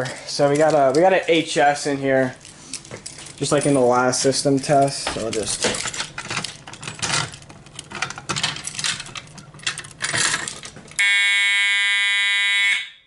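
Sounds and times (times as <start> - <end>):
keys jangling: 2.3 - 11.0
fire alarm horn: 11.0 - 13.0.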